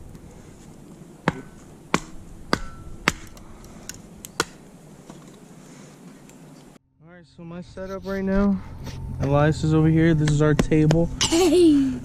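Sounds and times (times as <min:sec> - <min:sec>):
dry sticks snapping: 0:01.2 - 0:05.4.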